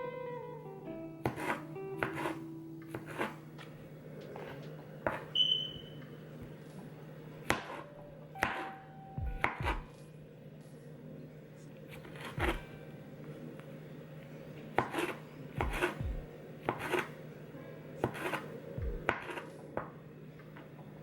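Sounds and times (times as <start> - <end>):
low steady hum: 0.0 - 21.0
knife slicing vegetables: 1.2 - 3.4, 7.4 - 8.8, 9.4 - 10.0, 11.9 - 12.7, 14.8 - 17.2, 18.0 - 19.5.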